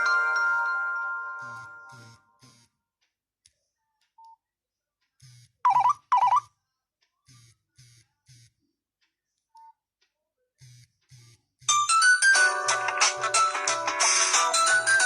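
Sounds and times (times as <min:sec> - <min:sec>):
electronic ringtone buzzy pulses: 0:01.1 - 0:02.7, 0:05.7 - 0:06.5.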